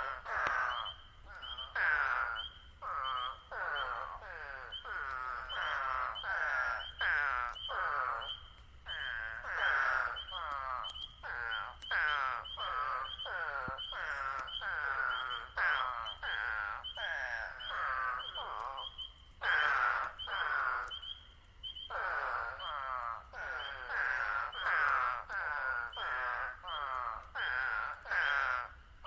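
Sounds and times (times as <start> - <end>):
high frog peeps: 0.0 - 28.8
toads calling in chorus: 0.0 - 29.0.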